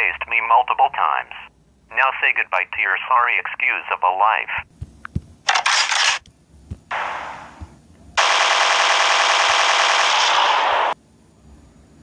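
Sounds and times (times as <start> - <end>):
rapid machine-gun fire: 5.5 - 6.2, 8.2 - 11.0.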